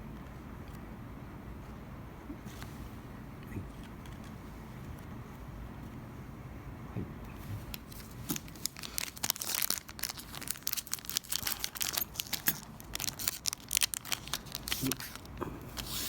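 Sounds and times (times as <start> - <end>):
wrapper tearing and crinkling: 7.7 - 15.9.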